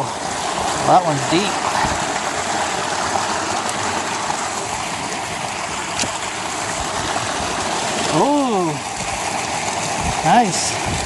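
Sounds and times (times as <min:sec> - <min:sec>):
creek water rushing over rocks: 0:00.0 - 0:11.0.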